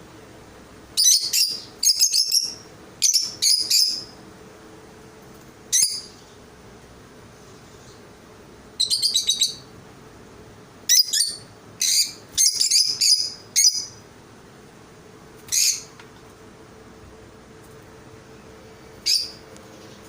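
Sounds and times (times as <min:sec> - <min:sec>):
small birds chirping: 0:00.9 - 0:04.2, 0:05.7 - 0:06.5, 0:07.4 - 0:08.1, 0:08.7 - 0:09.7, 0:10.8 - 0:14.1, 0:15.4 - 0:16.0, 0:18.8 - 0:20.0.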